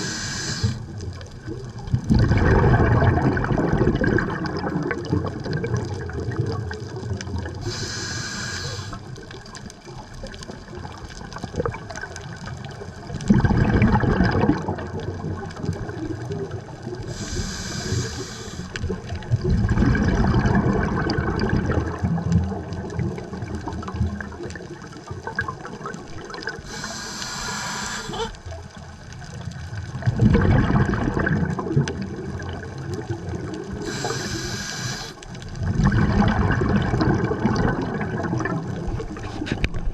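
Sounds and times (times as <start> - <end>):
regulator inhale hiss: 0.0 - 0.9, 7.6 - 9.1, 17.0 - 18.9, 26.6 - 28.4, 33.8 - 35.2
exhaled bubbles gurgling: 0.0 - 39.9.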